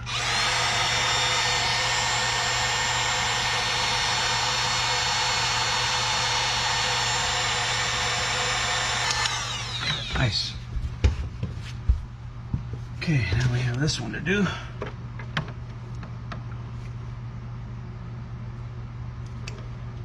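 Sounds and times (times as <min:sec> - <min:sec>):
heat gun blowing with fan whine: 0:00.0 - 0:10.7
fan spinning down: 0:00.0 - 0:12.5.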